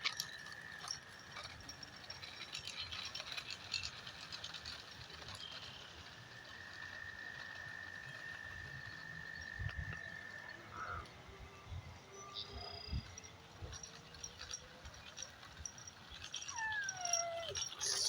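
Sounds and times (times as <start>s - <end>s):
electric scooter rattling: 0.0s - 18.0s.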